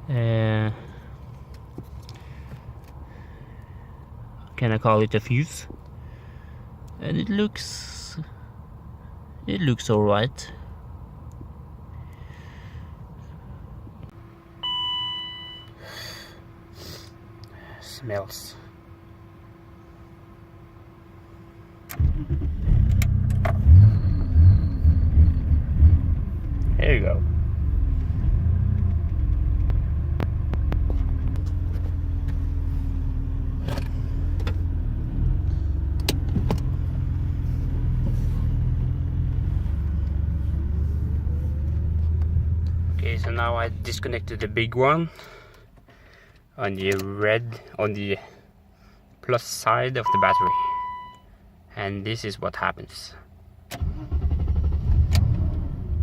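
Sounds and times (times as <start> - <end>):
steady low hum: 10.6 - 46.6
car engine idling: 15.8 - 46.3
electronic chime: 50.1 - 51.2.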